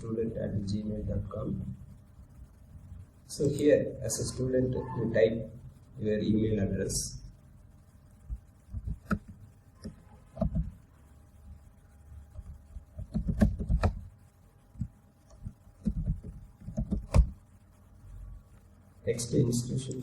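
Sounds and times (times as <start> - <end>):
keyboard keystrokes thumping: 8.3 - 10.8, 12.3 - 14.1, 14.8 - 17.4.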